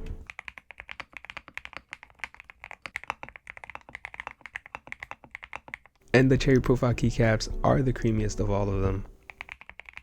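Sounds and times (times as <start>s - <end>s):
fast mechanical keyboard typing: 0.3s - 6.0s, 9.3s - 10.0s.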